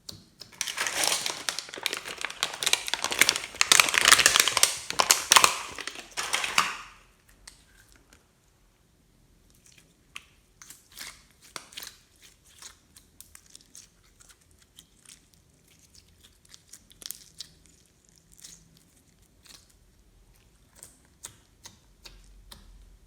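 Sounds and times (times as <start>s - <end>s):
slime crackles and clicks: 0.1s - 7.6s.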